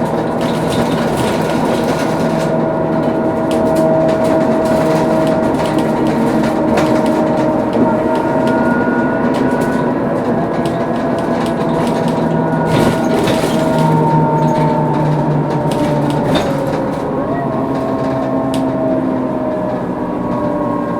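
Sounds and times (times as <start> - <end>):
body clicks and rattles: 0.0 - 19.0
bus differential whining: 0.0 - 20.9
diesel engine hum: 0.0 - 20.9.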